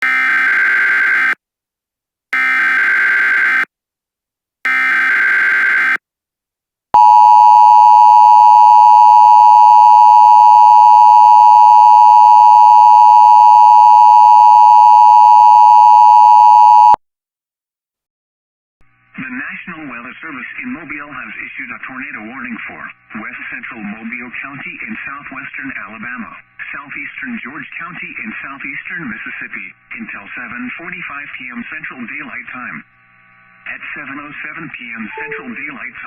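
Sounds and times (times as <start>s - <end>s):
two-tone alert signal: 35.2s - 35.6s.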